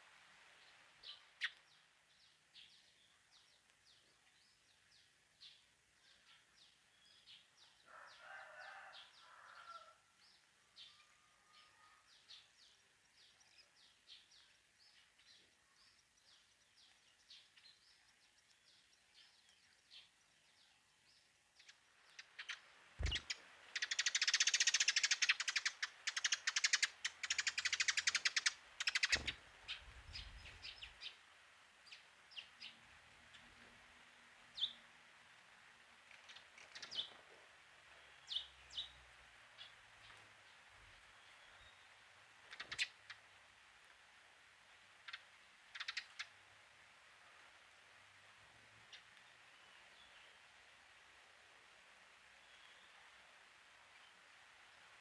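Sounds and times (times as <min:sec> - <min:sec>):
birds chirping: 0:10.8 - 0:31.3.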